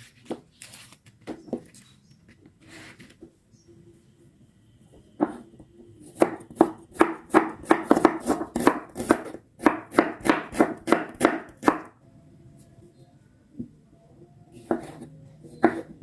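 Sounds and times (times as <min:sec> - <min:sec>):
knife chopping on cutting board: 0:06.1 - 0:11.9, 0:14.6 - 0:15.0, 0:15.6 - 0:15.9.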